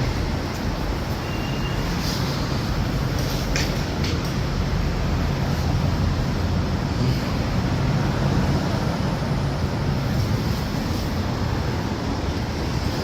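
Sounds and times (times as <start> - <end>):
road traffic rumble: 0.0 - 13.0.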